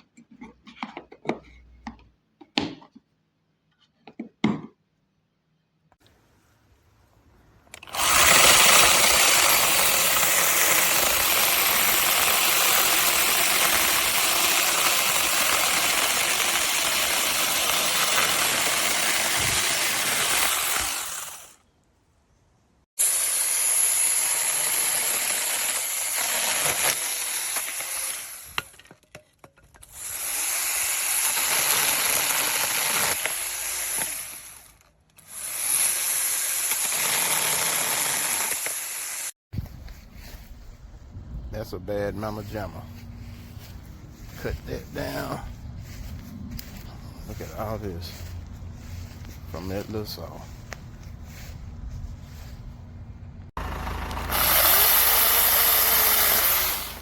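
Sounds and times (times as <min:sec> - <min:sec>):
chainsaw cutting wood: 0:07.7 - 0:21.6, 0:23.0 - 0:29.0, 0:29.8 - 0:39.4, 0:53.5 - 0:57.0
chainsaw motor whine: 0:07.8 - 0:21.6, 0:53.6 - 0:57.0.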